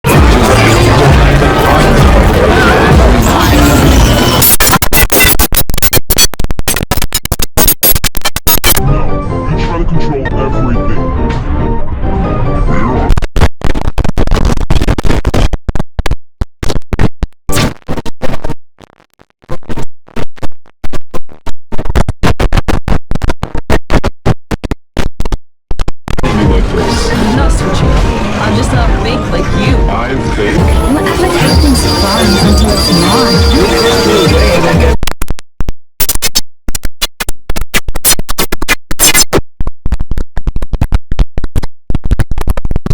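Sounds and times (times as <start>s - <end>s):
stuttering chopped shutdown sound: 0.1s - 8.8s, 21.8s - 35.0s
stuttering computer shutdown sound: 26.3s - 34.9s.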